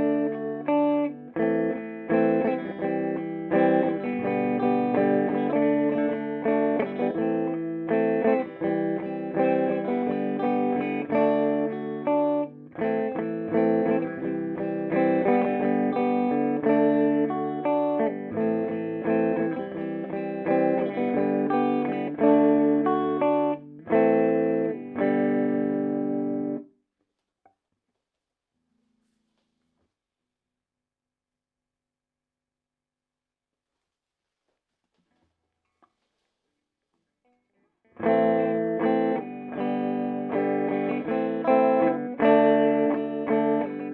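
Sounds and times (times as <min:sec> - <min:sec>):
clean electric guitar: 0:00.0 - 0:26.7, 0:38.0 - 0:43.9.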